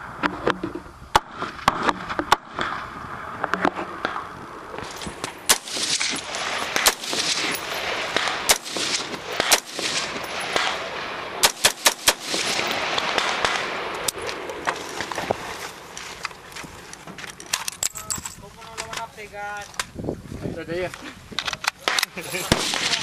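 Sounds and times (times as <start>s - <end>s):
rifle gunshots: 5.1s - 15.4s, 21.8s - 23.0s.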